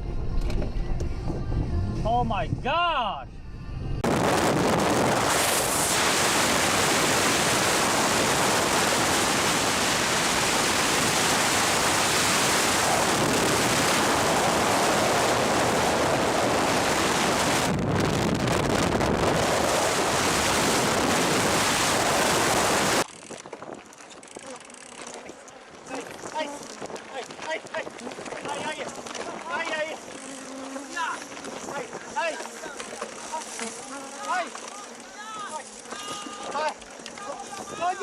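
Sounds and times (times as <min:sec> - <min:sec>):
rushing storm noise: 0:04.0 - 0:23.1.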